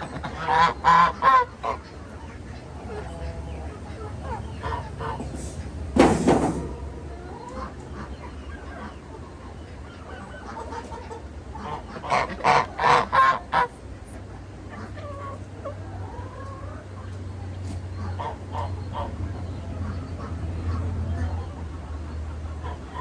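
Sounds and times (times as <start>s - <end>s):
geese honking: 0.0s - 6.0s, 6.6s - 23.0s.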